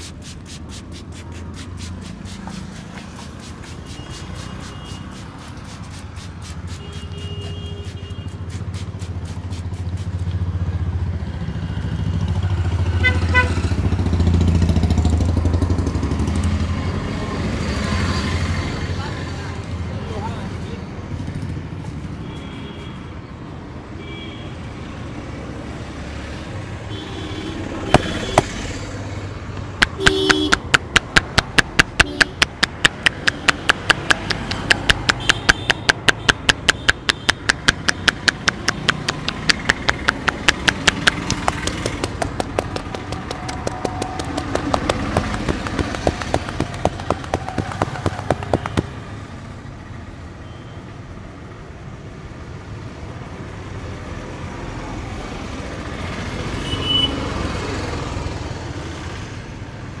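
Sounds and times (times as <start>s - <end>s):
street traffic noise: 0.0s - 60.0s
rhythmic hand strikes on head: 29.8s - 49.0s.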